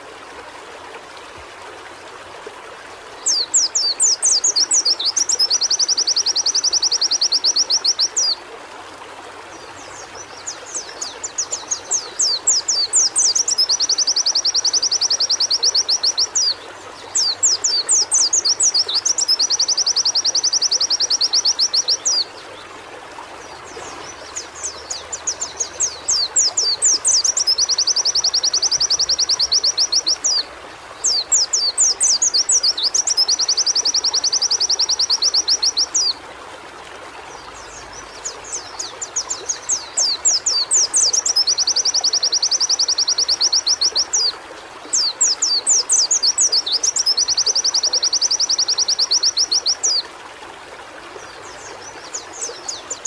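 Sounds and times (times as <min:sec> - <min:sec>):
bird chirping and trilling: 0:03.2 - 0:08.4, 0:10.4 - 0:22.3, 0:23.7 - 0:30.4, 0:31.0 - 0:36.2.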